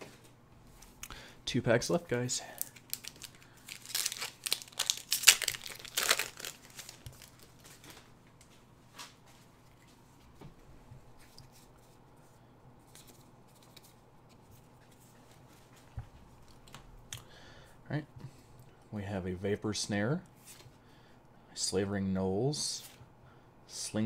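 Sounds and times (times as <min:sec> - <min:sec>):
cards rustling: 0:02.5 - 0:08.1, 0:12.8 - 0:15.3
wrapper tearing and crinkling: 0:02.6 - 0:07.9.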